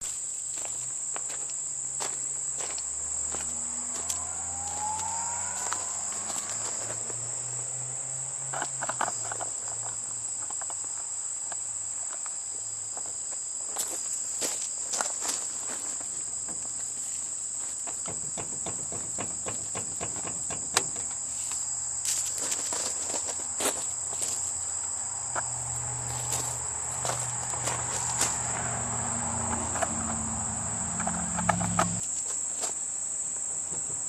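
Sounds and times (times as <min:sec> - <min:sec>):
crickets chirping: 0:00.0 - 0:34.0
sharp clicks and knocks: 0:17.8 - 0:21.2.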